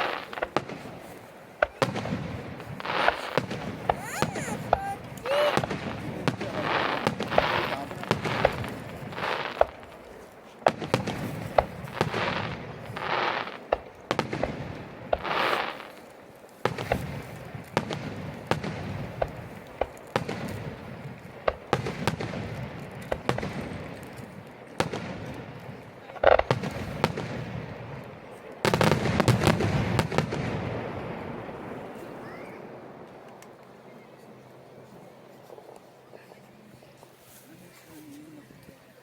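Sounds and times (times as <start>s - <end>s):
fireworks hiss: 0.0s - 14.3s, 15.1s - 20.9s
fireworks bangs and crackles: 0.0s - 37.5s.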